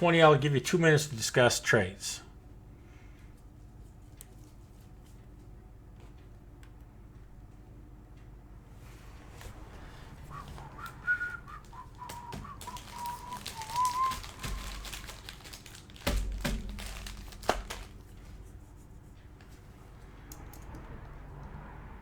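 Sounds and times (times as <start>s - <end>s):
person whistling: 9.9s - 15.4s
crinkling and clicking on table: 11.6s - 18.6s.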